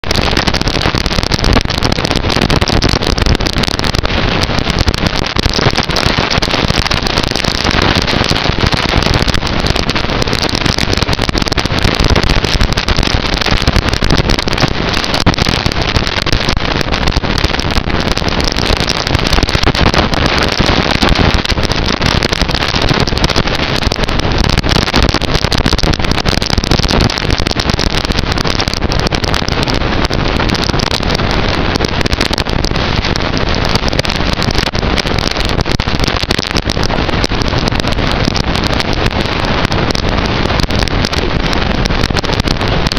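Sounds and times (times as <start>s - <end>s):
loud steady crackling noise: 0.0s - 42.9s.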